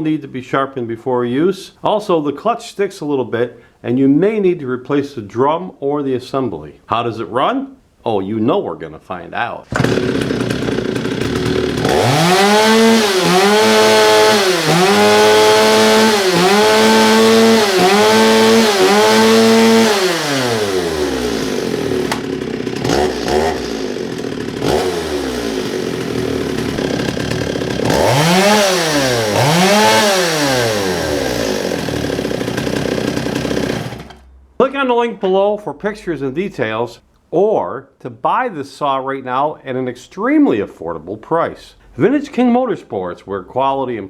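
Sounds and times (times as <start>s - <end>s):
chainsaw revving and idling: 9.7s - 34.3s.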